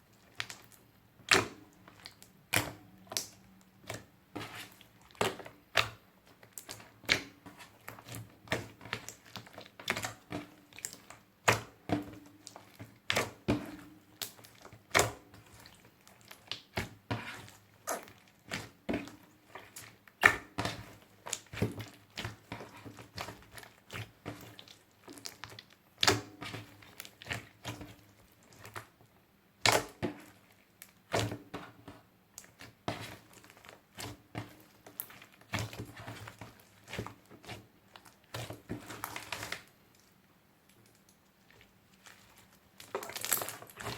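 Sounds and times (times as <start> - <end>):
slime kneaded with sticky clicks: 0.3 - 29.0.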